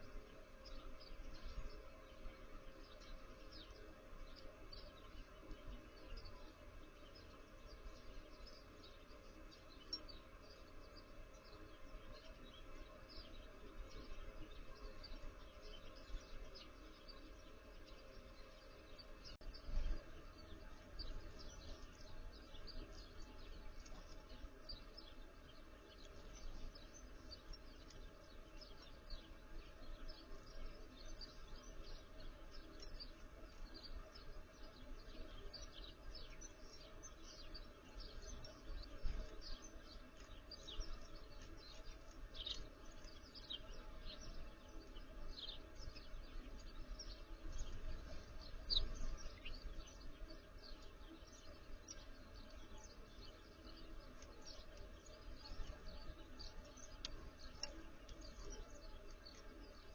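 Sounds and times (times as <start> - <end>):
songbirds chirping: 0.0 - 59.9.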